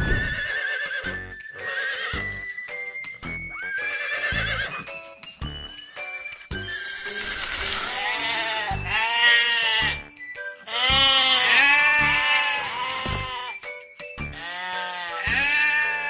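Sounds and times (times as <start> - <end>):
background music: 0.0 - 16.0
sheep bleating: 7.8 - 10.0, 10.7 - 13.6, 14.3 - 16.0.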